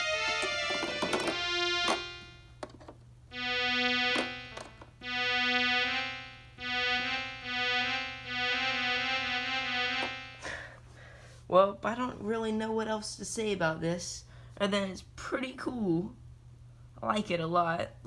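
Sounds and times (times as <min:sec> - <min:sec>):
keyboard playing notes: 0:00.0 - 0:10.6.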